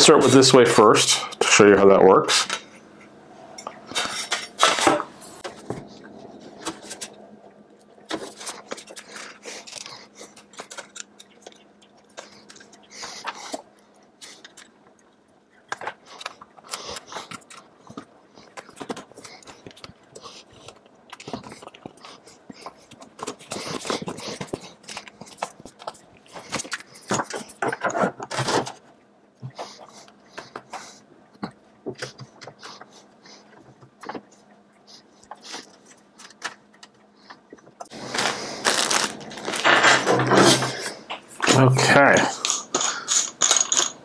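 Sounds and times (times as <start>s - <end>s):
faint steady hum: 0.0s - 44.0s.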